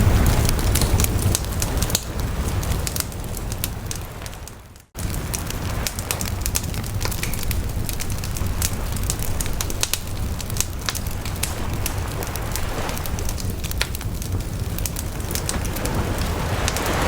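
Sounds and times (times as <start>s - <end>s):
sea waves: 0.0s - 17.0s
wood fire crackling and popping: 0.0s - 17.0s.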